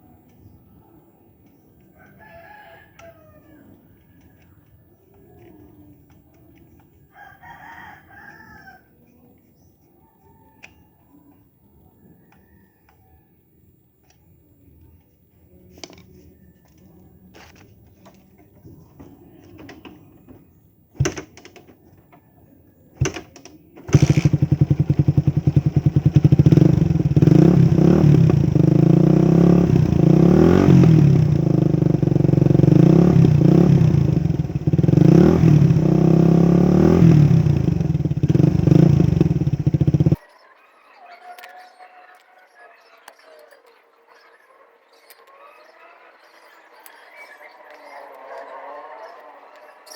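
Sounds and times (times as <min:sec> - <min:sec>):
sharp clicks: 0:21.0 - 0:21.8, 0:23.0 - 0:40.2
motorcycle engine revving: 0:23.0 - 0:40.2.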